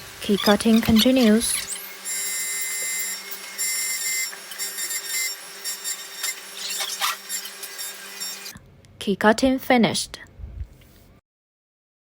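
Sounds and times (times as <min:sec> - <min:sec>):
key cutter high-pitched whine: 0:00.2 - 0:08.6.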